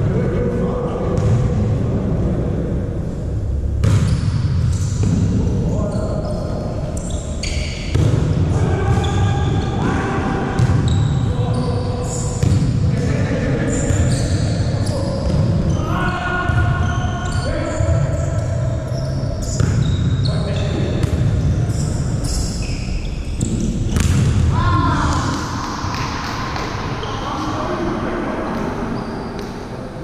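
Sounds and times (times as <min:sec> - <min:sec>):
volleyball strikes and thuds: 0:03.7 - 0:04.3, 0:07.8 - 0:09.3, 0:23.4 - 0:24.5
sneakers squeaking on court: 0:05.9 - 0:08.0, 0:10.6 - 0:12.8, 0:13.7 - 0:15.8, 0:16.5 - 0:24.3
players calling out: 0:24.4 - 0:29.3.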